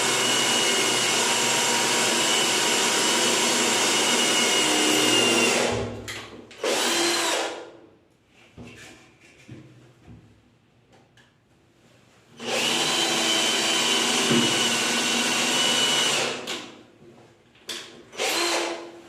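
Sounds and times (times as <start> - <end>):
power drill whining: 0.0 - 5.8, 6.6 - 7.6, 12.4 - 16.6, 18.2 - 18.9.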